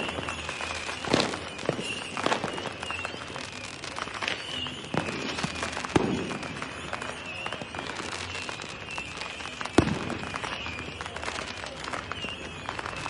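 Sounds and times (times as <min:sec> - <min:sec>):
fireworks and firecrackers banging: 0:00.0 - 0:13.0.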